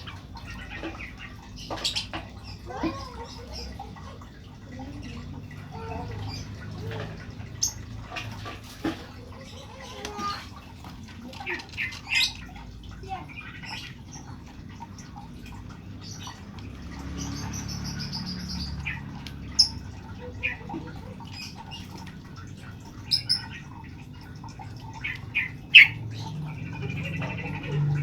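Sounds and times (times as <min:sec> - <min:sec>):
high chattering bird trill: 0:11.4 - 0:14.4, 0:24.9 - 0:28.0
bird chirping: 0:22.8 - 0:23.8, 0:24.9 - 0:28.0.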